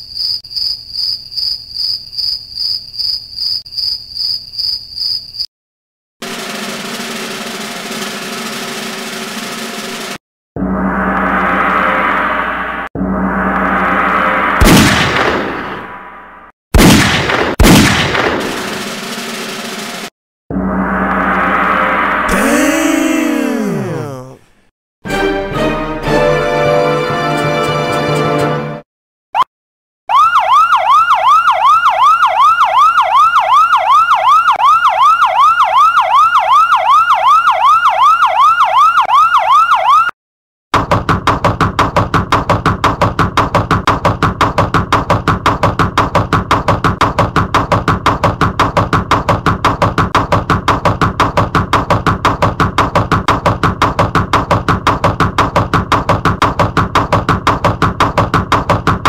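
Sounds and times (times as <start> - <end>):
electronic siren yelps: 30.1 - 40.1.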